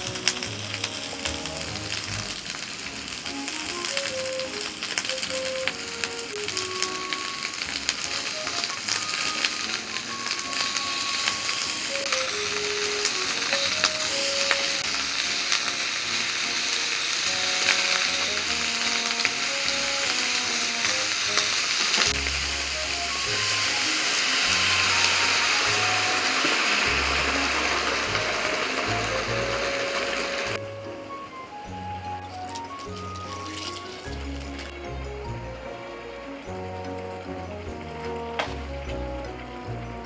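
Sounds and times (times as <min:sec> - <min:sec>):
food sizzling in a pan: 0:00.0 - 0:30.6, 0:32.5 - 0:39.8
light background music: 0:00.0 - 0:40.0.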